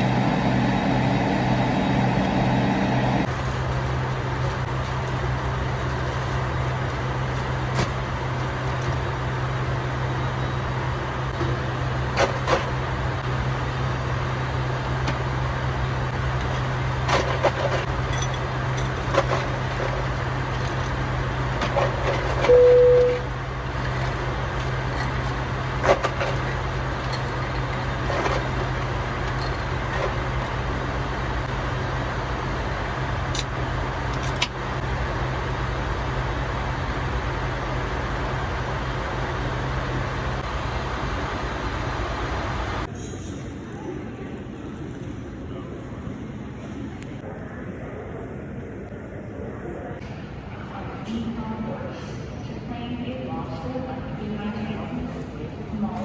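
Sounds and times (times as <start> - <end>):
vehicle interior hum: 0.0 - 47.3
brief tone: 22.4 - 23.4.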